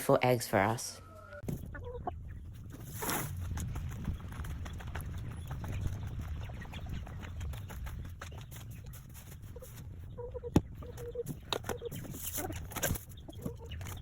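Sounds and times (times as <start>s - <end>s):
chickens clucking: 0.9s - 14.0s
rustling: 2.5s - 4.6s.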